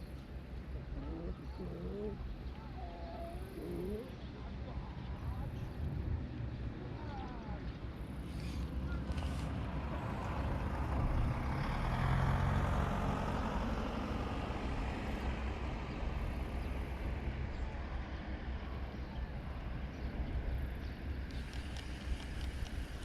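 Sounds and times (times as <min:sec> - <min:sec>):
vehicle engine passing: 0:08.4 - 0:17.2.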